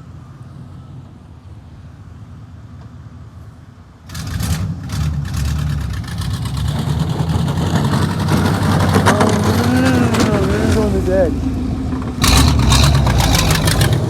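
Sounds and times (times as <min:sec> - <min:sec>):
vehicle engine starting and revving: 0:04.1 - 0:14.0.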